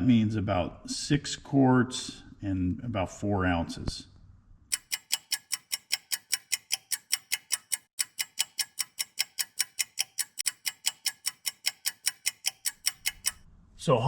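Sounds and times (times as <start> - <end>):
fast clock ticking: 4.7 - 13.4.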